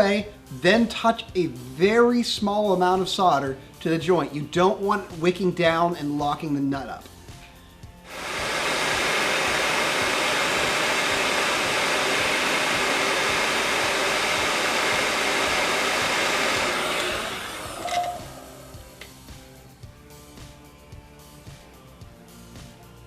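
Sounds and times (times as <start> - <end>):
heat gun blowing hot air: 8.1 - 19.2.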